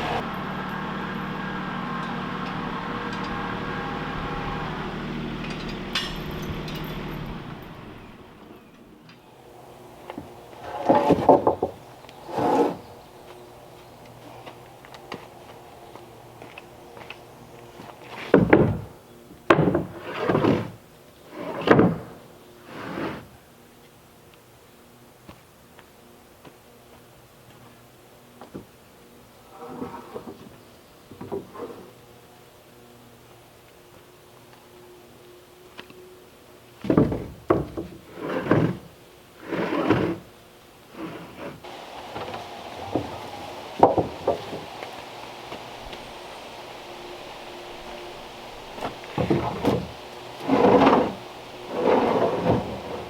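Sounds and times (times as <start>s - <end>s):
wood scraping and sliding: 0.0s - 23.3s, 29.5s - 30.6s, 36.9s - 40.3s, 40.9s - 53.0s
wooden knocks: 9.6s - 18.9s, 41.7s - 53.0s.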